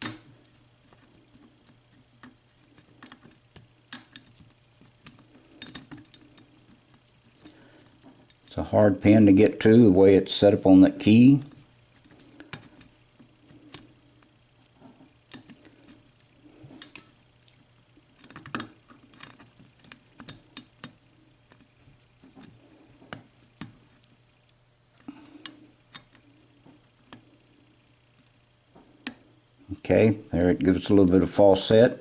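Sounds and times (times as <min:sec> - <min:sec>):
faint low hum: 0:00.0 - 0:32.0
lock pick clicking and scraping: 0:18.2 - 0:20.9.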